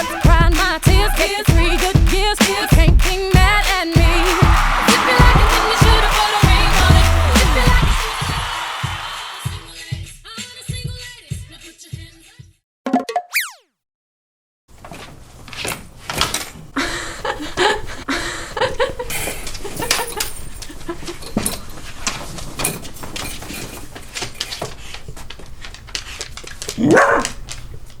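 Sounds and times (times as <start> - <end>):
people talking: 2.4 - 9.6
loud vocal cry: 3.4 - 9.6
people laughing: 4.0 - 9.5.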